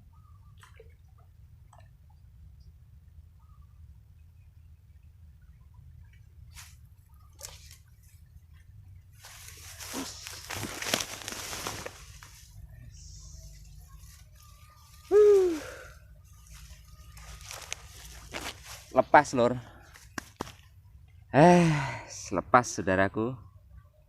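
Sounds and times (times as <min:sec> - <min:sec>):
water splashing and dripping: 0:00.5 - 0:02.6.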